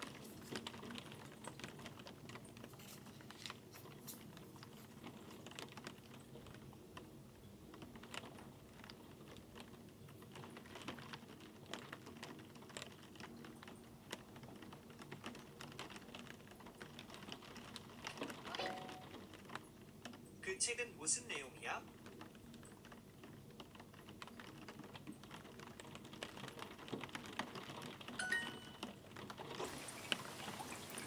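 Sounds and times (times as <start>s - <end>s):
computer keyboard typing: 14.2s - 19.3s, 23.8s - 29.0s
faint steady hum: 29.5s - 31.0s.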